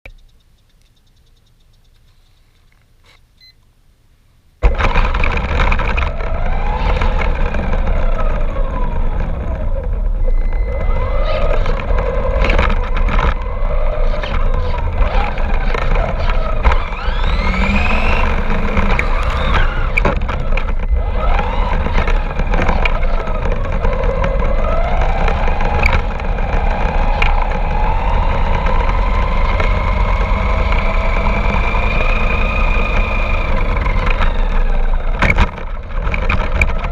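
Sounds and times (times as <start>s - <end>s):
low rumble: 4.6s - 36.0s
toy car motor whining: 6.1s - 35.1s.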